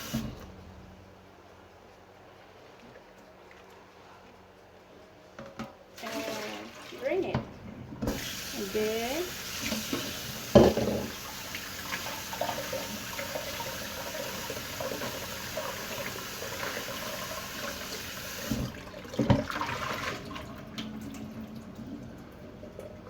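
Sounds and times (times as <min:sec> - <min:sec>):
tap water running into sink: 0:06.0 - 0:23.0.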